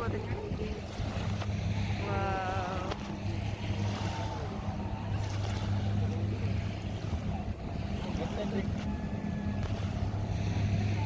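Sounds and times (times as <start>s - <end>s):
boat engine droning: 0.0s - 11.0s.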